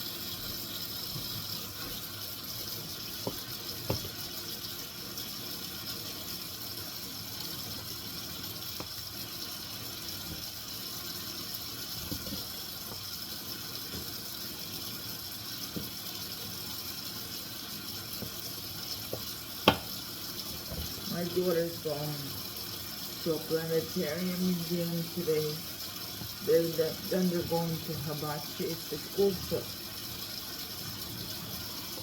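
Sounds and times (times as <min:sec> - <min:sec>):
tap running into a sink: 0:00.2 - 0:21.2.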